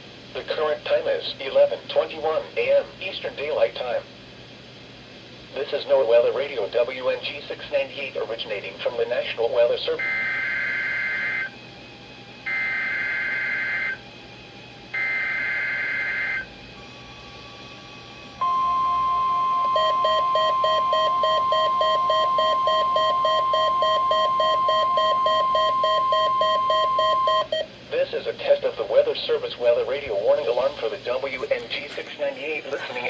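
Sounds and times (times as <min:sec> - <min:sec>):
steady alarm tone: 0:10.0 - 0:27.6
rapid pulsing beep: 0:12.5 - 0:14.0, 0:15.0 - 0:16.5, 0:18.4 - 0:27.7
two-tone data bursts: 0:12.5 - 0:14.0, 0:15.0 - 0:16.5.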